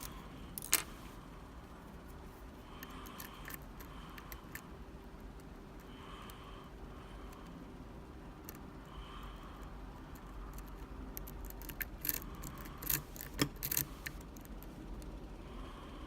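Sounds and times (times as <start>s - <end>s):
lockpicking tools clicking: 0.0s - 0.9s, 10.5s - 14.2s.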